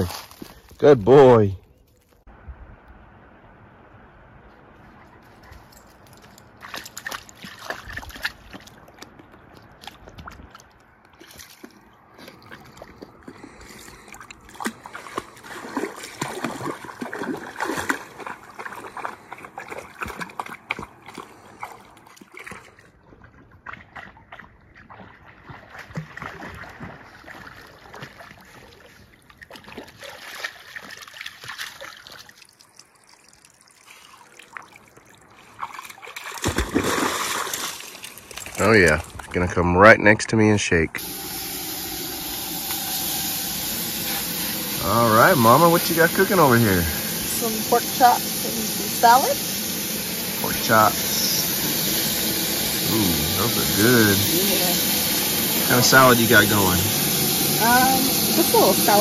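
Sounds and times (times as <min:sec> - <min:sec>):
running river water: 0:02.9 - 0:39.6, 0:41.0 - 0:59.0
dog splashing through water: 0:05.4 - 0:32.8, 0:33.8 - 0:39.3.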